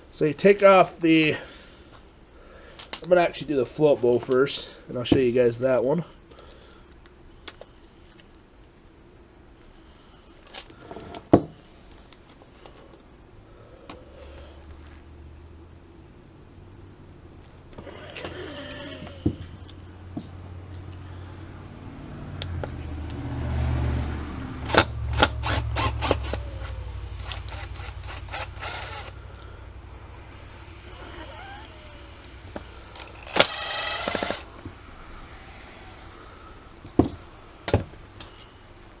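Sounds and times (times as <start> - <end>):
low hum: 13.2 - 39.0.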